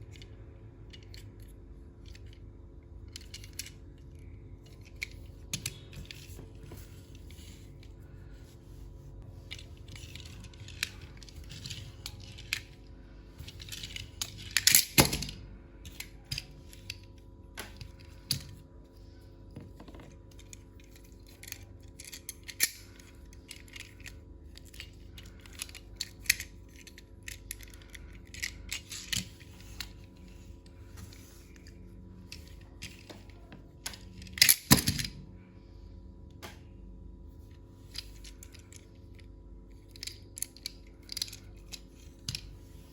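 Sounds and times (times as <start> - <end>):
plastic parts clicking: 13.4 - 17.0, 19.7 - 30.5, 31.1 - 35.2, 39.8 - 42.8.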